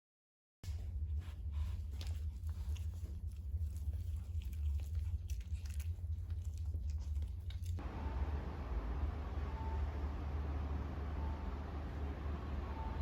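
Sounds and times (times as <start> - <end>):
low hum: 0.7 - 13.0
dog chewing: 1.8 - 7.8.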